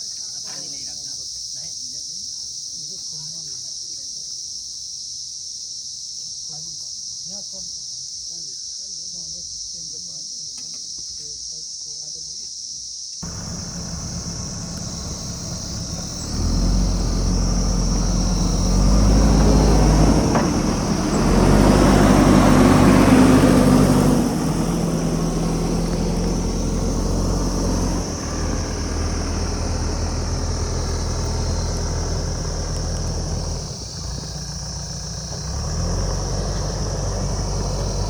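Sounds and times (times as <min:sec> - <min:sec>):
diesel engine working under load: 0:13.2 - 0:38.0.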